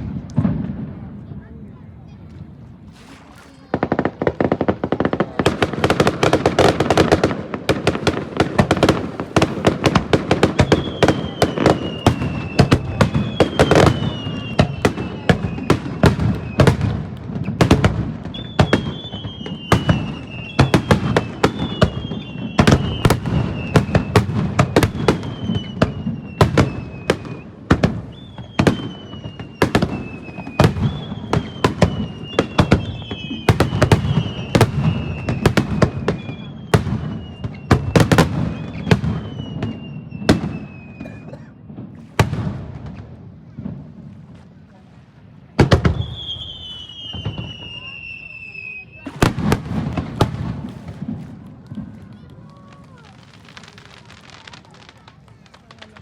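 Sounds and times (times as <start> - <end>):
fireworks bangs and crackling: 0.0 - 56.0
falling firework whistles: 8.1 - 42.3, 45.8 - 51.4.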